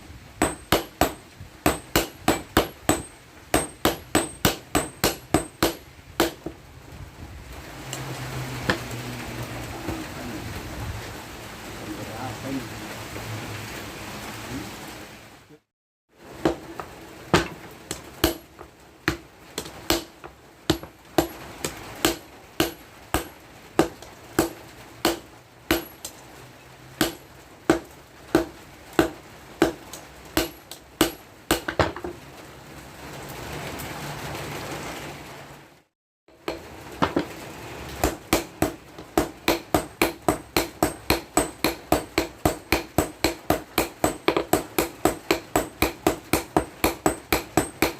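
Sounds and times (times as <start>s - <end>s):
hand hammer striking steel: 0.4s - 6.5s, 16.4s - 26.2s, 27.0s - 32.0s, 36.3s - 37.3s, 38.0s - 47.9s.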